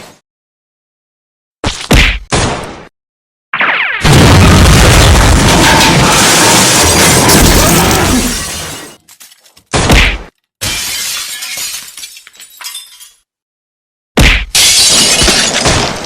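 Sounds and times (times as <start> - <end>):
glass shattering: 4.9 - 9.5, 10.6 - 13.2, 14.6 - 16.0.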